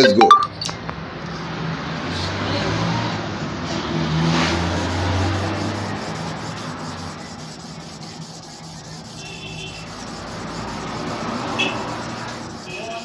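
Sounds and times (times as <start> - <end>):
scraping on a sharpening stone: 4.3 - 13.0.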